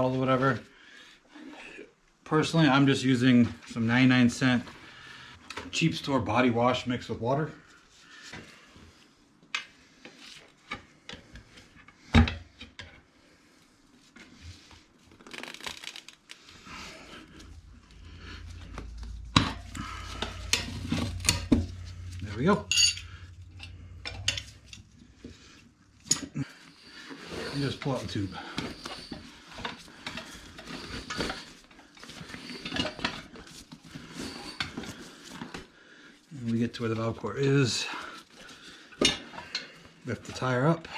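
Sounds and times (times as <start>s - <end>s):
metallic clinks: 19.5s - 24.9s.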